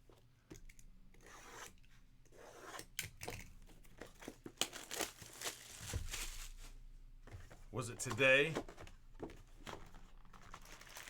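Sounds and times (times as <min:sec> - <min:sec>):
packaging torn and crinkled: 0:04.6 - 0:06.6, 0:10.3 - 0:11.0.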